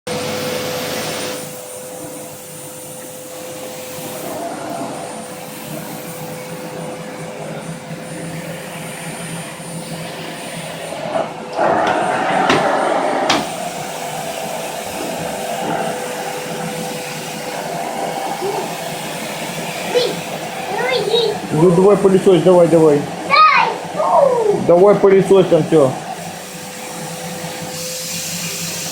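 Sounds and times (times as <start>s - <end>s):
vacuum cleaner running: 0.0s - 28.9s
sharp knocks: 11.8s - 12.7s.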